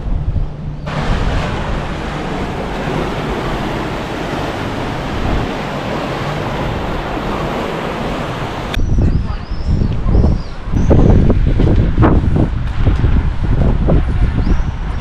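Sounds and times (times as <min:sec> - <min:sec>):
waves breaking and washing: 0:00.8 - 0:08.8.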